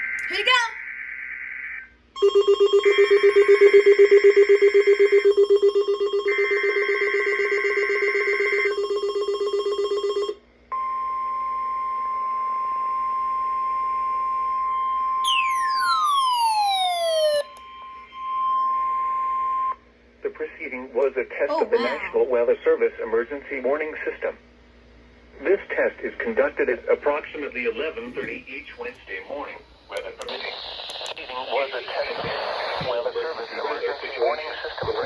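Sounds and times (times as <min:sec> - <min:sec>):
rapidly pulsing alarm tone: 0:00.0 - 0:10.4, 0:15.2 - 0:19.8
steady warning alarm tone: 0:02.2 - 0:14.7, 0:15.3 - 0:19.8
steady higher-pitched tone: 0:15.3 - 0:19.8.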